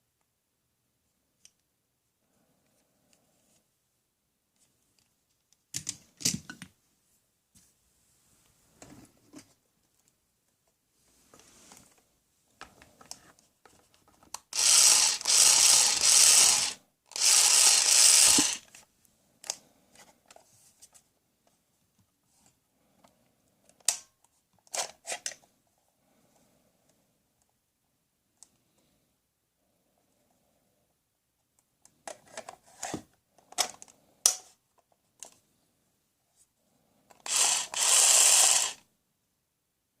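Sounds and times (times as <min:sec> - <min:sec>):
plastic toy mechanism ratcheting: 0:14.3 - 0:18.8, 0:37.1 - 0:38.8.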